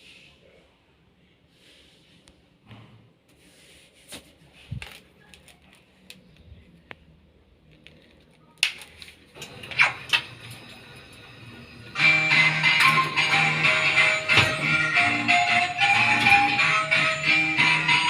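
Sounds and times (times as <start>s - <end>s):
small parts clicking and clattering: 7.7s - 9.2s.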